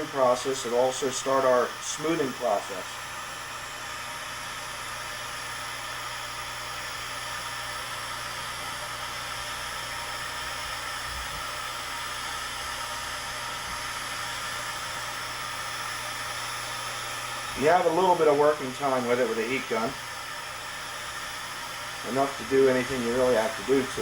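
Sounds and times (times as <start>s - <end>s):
heat gun blowing with low hum: 0.0s - 24.0s.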